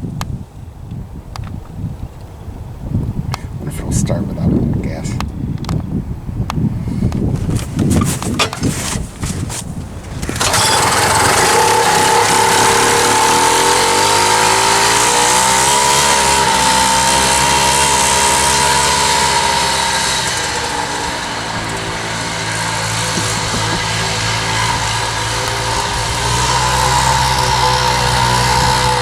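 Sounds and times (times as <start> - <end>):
snowmobile engine running: 6.8 - 29.0.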